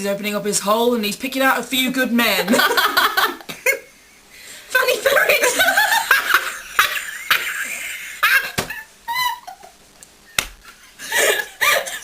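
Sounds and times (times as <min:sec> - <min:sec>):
sharp slaps: 0:08.5 - 0:08.8, 0:10.4 - 0:10.6
people laughing in breathy gasps: 0:10.7 - 0:12.0.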